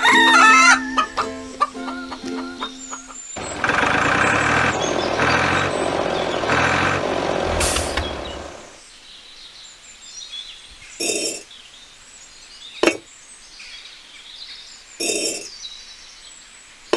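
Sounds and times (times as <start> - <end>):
heavy vehicle engine: 3.4 - 8.8
air brake hiss: 7.6 - 8.4
faint bird chirps: 7.6 - 16.9.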